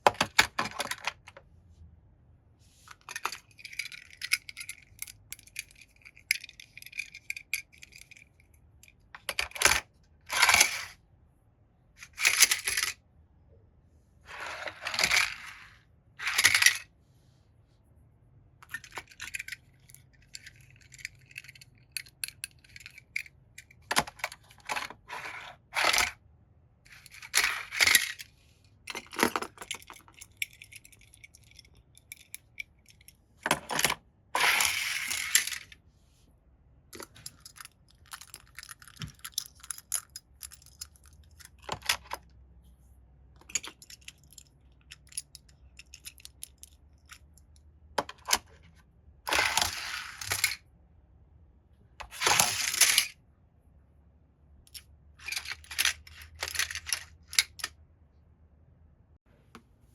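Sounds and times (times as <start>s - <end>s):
toy cars rattling and clinking: 3.0s - 11.0s, 12.0s - 13.0s, 14.3s - 16.9s, 18.6s - 26.2s, 26.9s - 28.3s, 28.9s - 35.8s, 37.0s - 42.2s, 43.4s - 47.5s, 49.3s - 50.6s, 52.0s - 53.2s, 54.7s - 57.8s.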